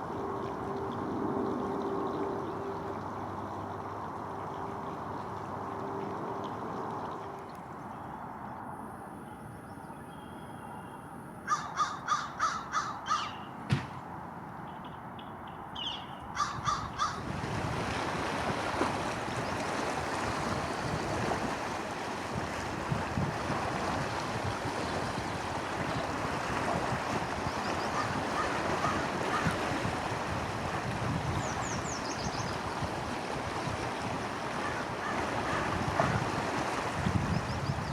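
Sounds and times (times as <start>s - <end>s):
crow calling: 11.4s - 13.6s, 15.8s - 17.2s, 27.9s - 29.7s, 34.6s - 36.2s.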